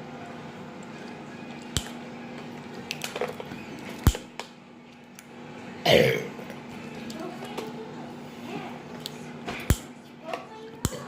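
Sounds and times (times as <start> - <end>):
boy burping: 5.8 - 6.3.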